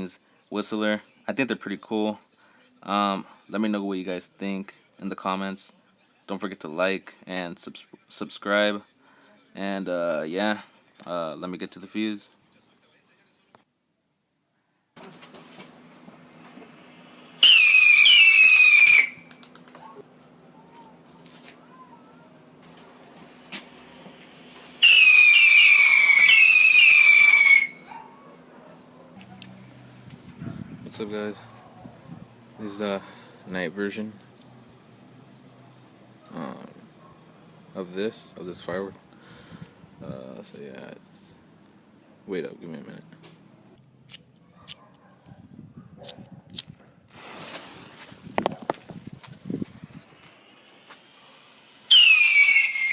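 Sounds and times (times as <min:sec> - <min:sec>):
fuse hissing: 0:16.1 - 0:19.2, 0:22.6 - 0:27.8, 0:49.4 - 0:52.9
whistling firework: 0:16.8 - 0:19.4, 0:24.8 - 0:27.9, 0:49.7 - 0:52.9.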